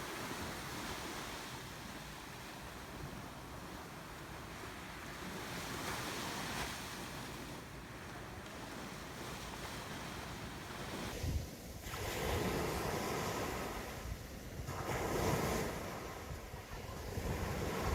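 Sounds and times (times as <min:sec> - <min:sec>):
ocean waves breaking: 0:00.0 - 0:17.9.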